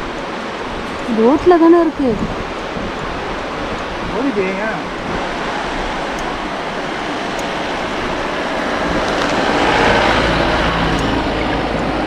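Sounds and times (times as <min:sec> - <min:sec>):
river water rushing: 0:00.0 - 0:12.0
road vehicle approaching: 0:04.8 - 0:12.0.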